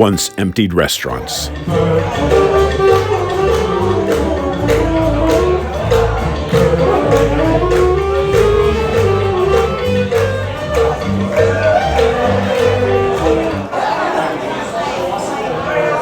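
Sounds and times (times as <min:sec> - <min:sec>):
music with steady beat: 0:01.5 - 0:13.6.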